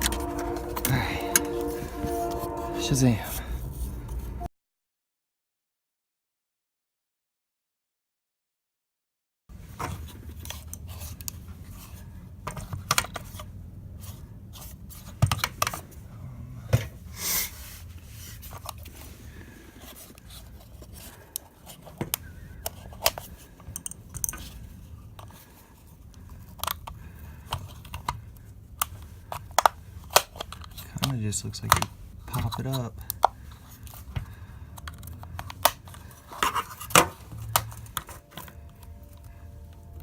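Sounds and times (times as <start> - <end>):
low steady hum: 0.0 - 4.5, 22.1 - 40.0
short scrape: 0.0 - 4.5.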